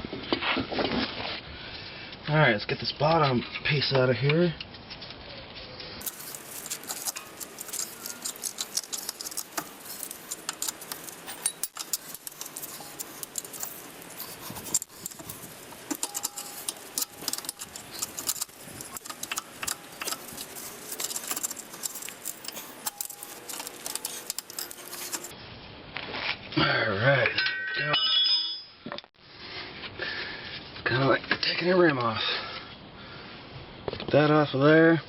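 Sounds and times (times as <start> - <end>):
metallic clicks and rattles of tools: 6.0 - 25.3.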